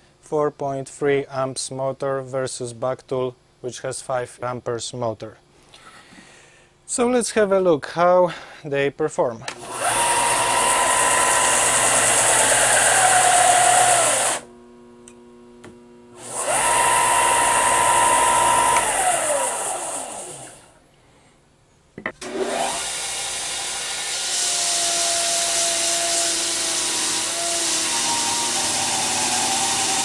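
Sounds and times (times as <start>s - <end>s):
sander motor whine: 9.6s - 20.8s, 22.2s - 30.0s.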